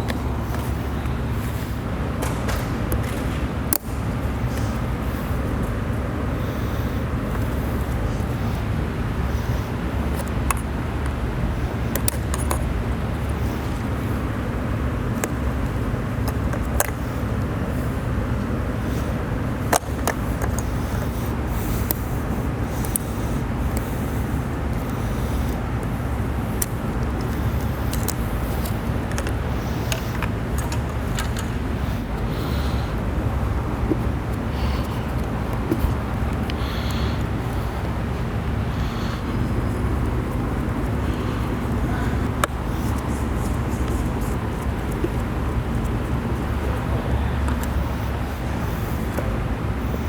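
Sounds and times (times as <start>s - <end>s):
steady low hum: 0.0s - 50.0s
steady low rumble: 0.0s - 50.0s
plastic connectors clicking: 11.8s - 12.7s, 24.7s - 32.0s.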